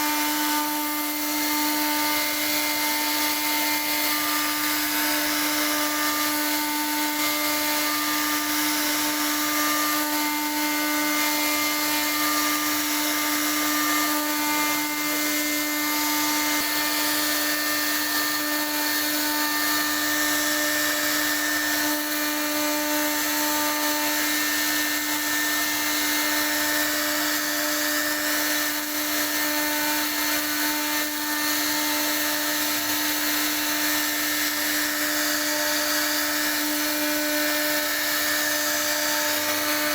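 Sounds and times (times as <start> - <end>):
router spindle whine: 0.0 - 39.9.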